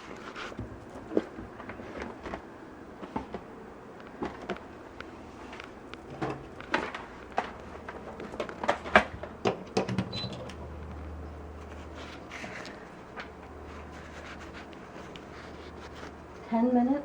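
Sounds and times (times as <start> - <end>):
plastic clicking and knocking: 5.9 - 10.6.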